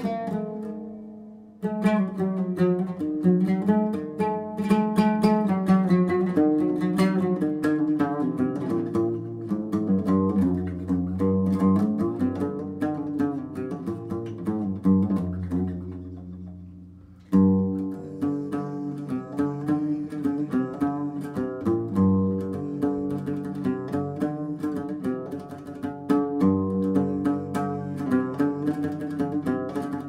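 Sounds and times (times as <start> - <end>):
plucked string music: 0.0 - 30.0.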